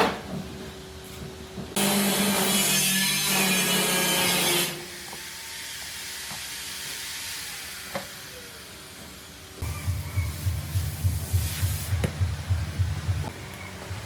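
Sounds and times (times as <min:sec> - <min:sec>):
power tool grinding: 0:01.8 - 0:06.4
steady hum: 0:09.6 - 0:14.0.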